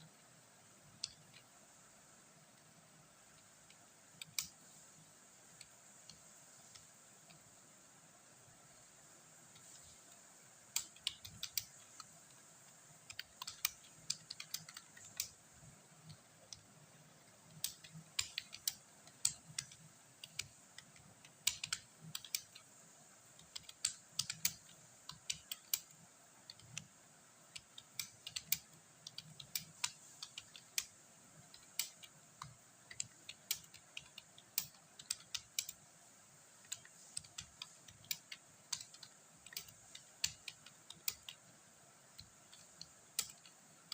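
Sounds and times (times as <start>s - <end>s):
faint steady hiss: 0.0s - 43.9s
computer keyboard typing: 1.0s - 1.5s, 10.7s - 15.4s, 17.5s - 22.7s, 23.4s - 26.9s, 27.5s - 35.8s, 36.6s - 41.5s, 42.1s - 43.9s.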